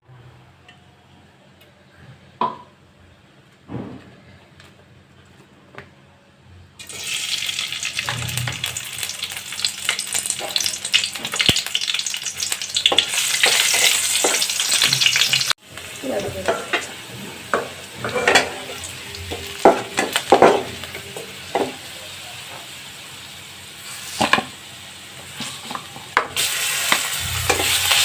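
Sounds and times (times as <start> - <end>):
hot oil sizzling in a pan: 6.8 - 28.0.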